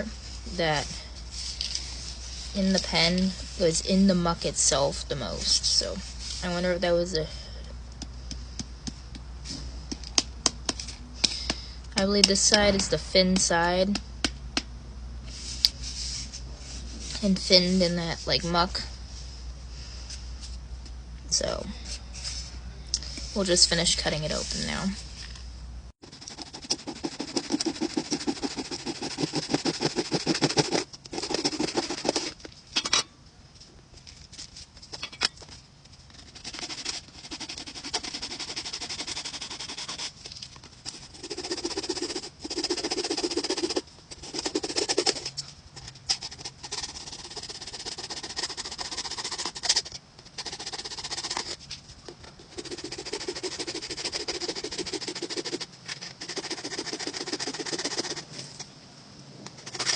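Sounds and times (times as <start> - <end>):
saw rasping through gourd shell: 26.0 - 32.4, 36.2 - 40.2, 40.8 - 51.6, 52.4 - 58.3, 59.6 - 59.9.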